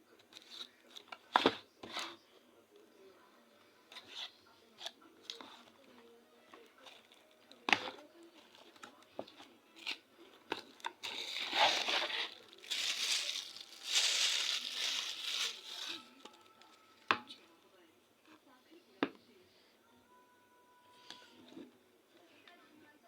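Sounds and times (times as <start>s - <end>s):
packaging crinkling and tearing: 11.0s - 16.6s.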